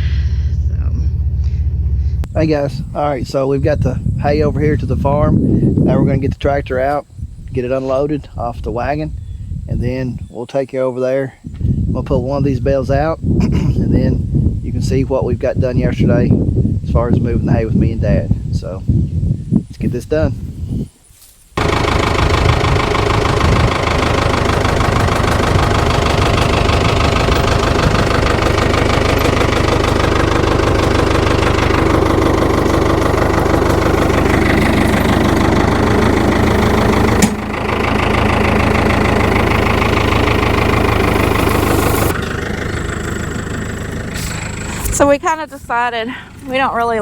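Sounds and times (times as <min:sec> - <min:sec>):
tractor engine knocking clatter: 0:21.6 - 0:47.0.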